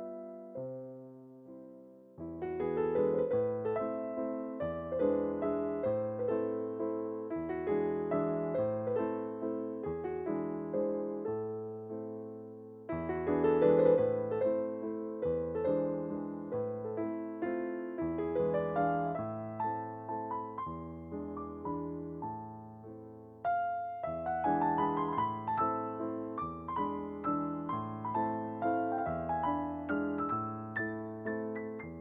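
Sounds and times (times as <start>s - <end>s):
soft piano music: 0.0s - 32.0s.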